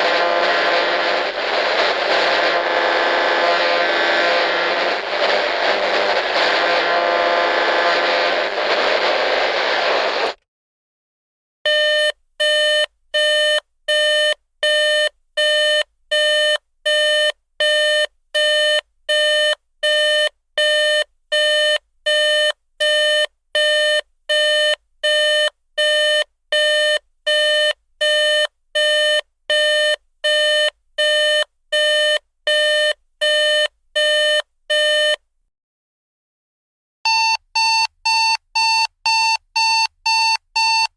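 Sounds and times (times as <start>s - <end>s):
radio static hiss: 0.0s - 10.4s.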